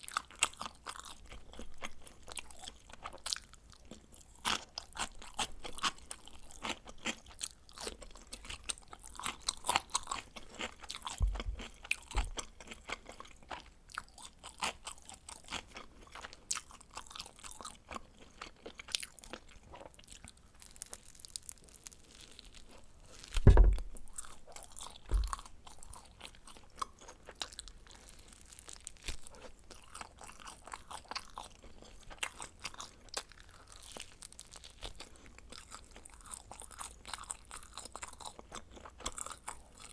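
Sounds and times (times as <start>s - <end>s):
chewing crunchy pizza crust: 0.0s - 39.9s
dull low thumps: 11.1s - 12.4s, 23.4s - 24.3s, 25.1s - 25.5s.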